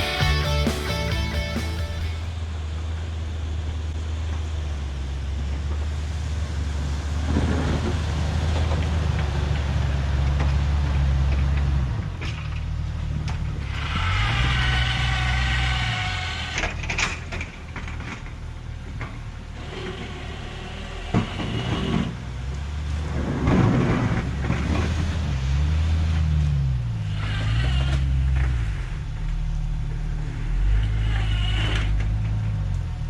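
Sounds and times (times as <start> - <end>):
engine revving while plowing snow: 5.8 - 17.5, 19.5 - 33.0.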